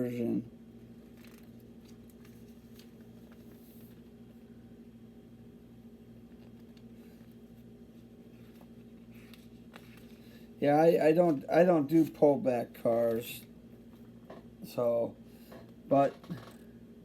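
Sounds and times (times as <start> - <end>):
low electrical hum: 0.0 - 17.0
handling rustles: 1.0 - 4.2.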